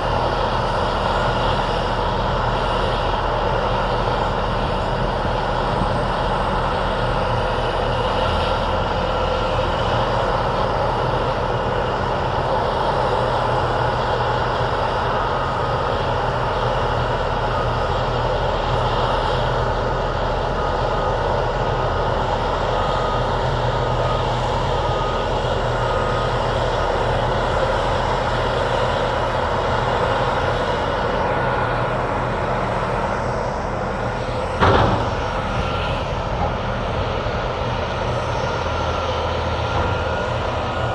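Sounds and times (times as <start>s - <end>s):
heavy diesel machinery running: 0.0s - 40.9s
sharp metallic knock: 34.6s - 35.2s.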